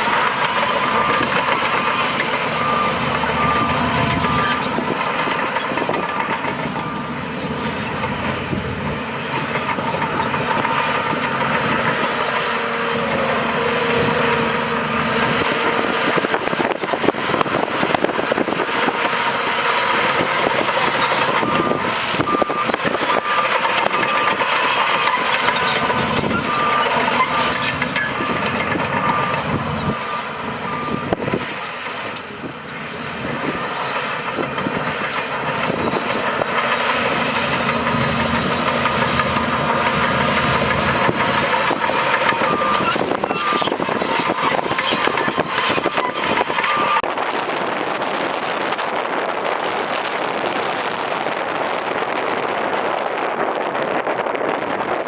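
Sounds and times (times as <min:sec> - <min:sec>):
reversing alarm beeping: 0:00.0 - 0:16.5, 0:20.5 - 0:47.1
machinery clanks and rattles: 0:00.0 - 0:47.3
heavy machinery running: 0:00.0 - 0:55.0.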